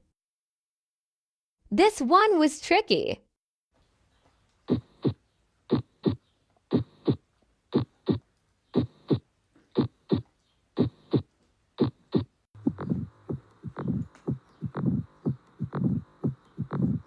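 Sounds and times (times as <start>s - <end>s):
heartbeat lub-dub: 4.7s - 9.2s, 9.8s - 17.0s.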